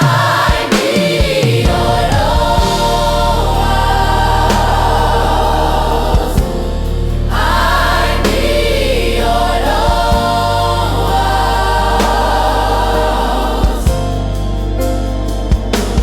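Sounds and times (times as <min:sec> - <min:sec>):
gospel choir singing: 0:00.0 - 0:16.0
low bass line: 0:01.6 - 0:16.0.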